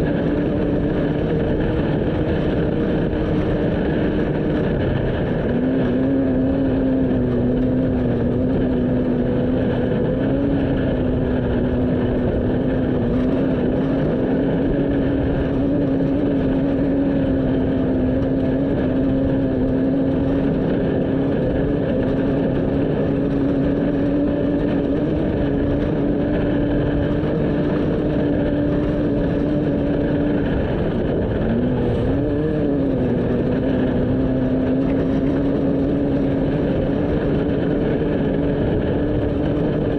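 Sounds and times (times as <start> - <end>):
engine running hard: 0.0 - 39.9
road and wind noise: 0.0 - 39.9.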